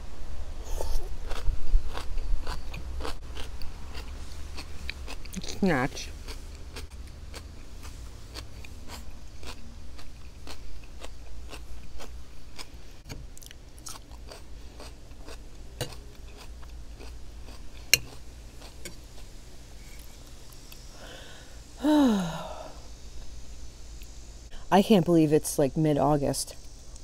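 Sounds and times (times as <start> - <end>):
chewing and crunching food: 0.6 - 20.9.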